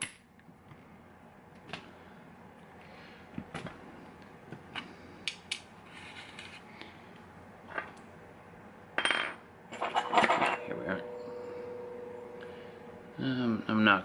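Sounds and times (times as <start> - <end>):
metallic rattle-scrape: 9.8 - 11.0.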